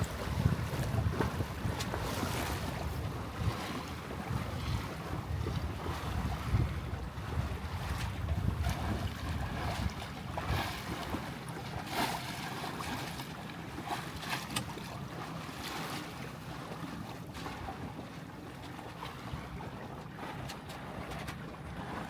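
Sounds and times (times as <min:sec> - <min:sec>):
wind buffeting microphone: 0:00.0 - 0:11.4
small waves slapping: 0:00.0 - 0:22.0
water rushing against hull: 0:00.0 - 0:22.0.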